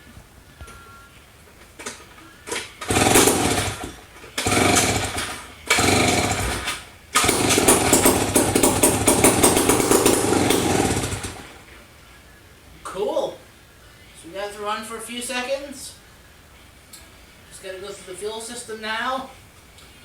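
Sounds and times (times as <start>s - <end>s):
engine popping: 2.6s - 11.6s
chainsaw engine running: 2.8s - 11.6s.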